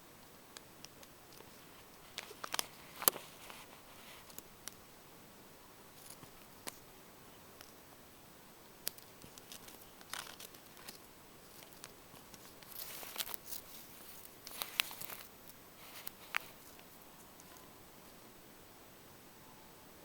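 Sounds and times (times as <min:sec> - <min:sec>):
tortoise claws and shell scraping: 0:01.3 - 0:04.4, 0:08.9 - 0:17.7.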